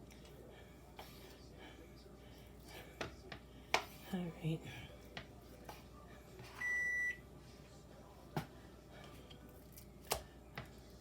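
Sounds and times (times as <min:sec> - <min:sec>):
appliance electronic beep: 0:06.6 - 0:07.2.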